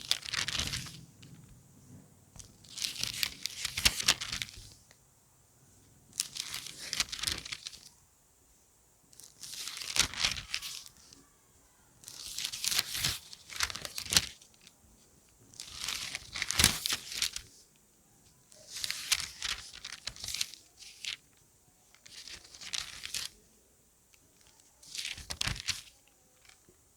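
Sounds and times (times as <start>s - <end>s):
book pages turning: 0.0s - 1.6s, 2.4s - 4.8s, 6.2s - 7.9s, 9.2s - 11.2s, 12.1s - 14.4s, 15.6s - 17.6s, 18.7s - 21.2s.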